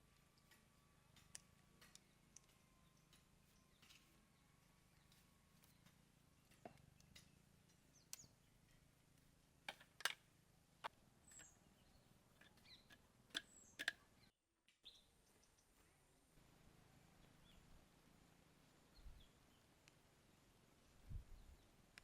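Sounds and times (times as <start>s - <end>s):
sharp clicks and knocks: 0.3s - 4.1s, 12.4s - 14.1s.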